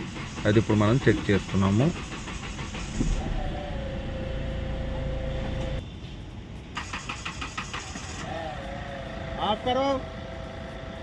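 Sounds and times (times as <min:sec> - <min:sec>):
starter motor cranking engine: 0:00.0 - 0:05.8, 0:06.8 - 0:08.4.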